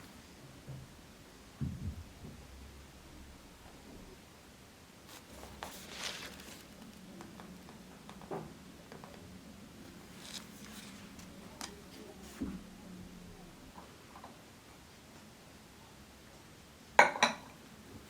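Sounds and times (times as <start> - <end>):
faint steady hum: 0.0 - 18.0
brief rustle: 5.1 - 6.8.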